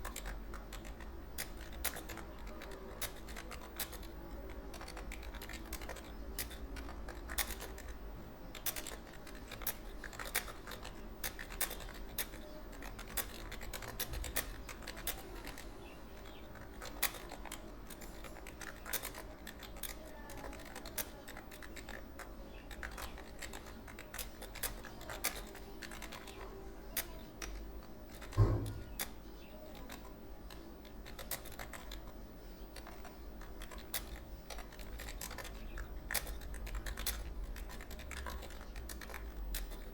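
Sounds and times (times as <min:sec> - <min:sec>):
keyboard typing: 0:00.0 - 0:39.9
loud thump: 0:28.4 - 0:28.8.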